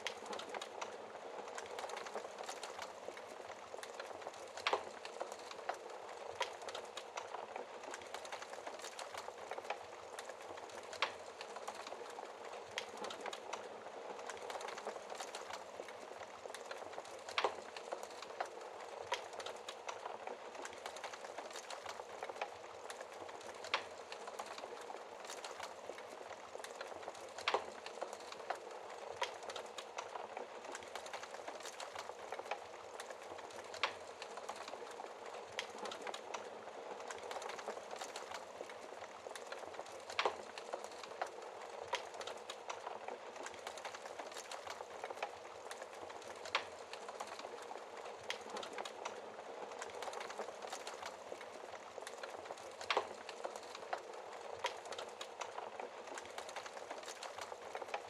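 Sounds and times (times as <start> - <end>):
burning logs popping: 0.0 - 58.0
wood fire crackling: 0.0 - 58.0.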